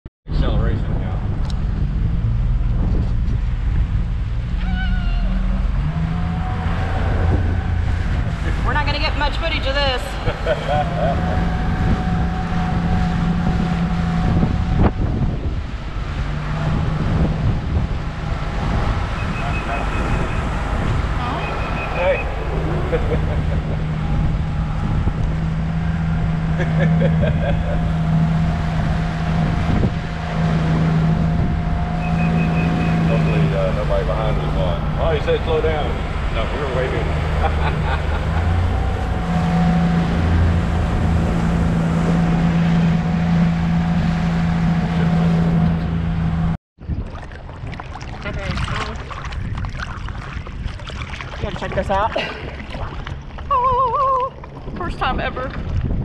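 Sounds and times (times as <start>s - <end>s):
speedboat engine rumble: 0.3s - 56.0s
rushing wind and water: 0.4s - 56.0s
wavering higher tone: 9.3s - 17.2s, 27.3s - 36.0s.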